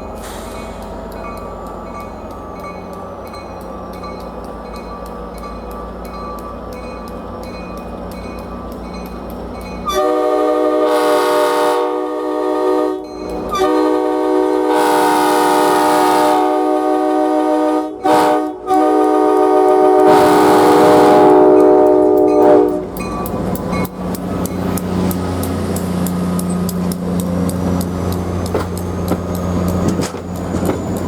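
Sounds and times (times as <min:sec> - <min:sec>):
locomotive air horn blasts: 0:09.9 - 0:22.9.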